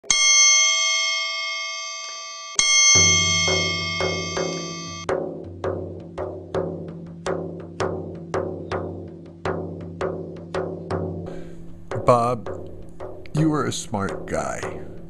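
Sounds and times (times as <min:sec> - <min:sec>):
ringing percussive strikes: 0:00.0 - 0:06.8, 0:10.6 - 0:15.0.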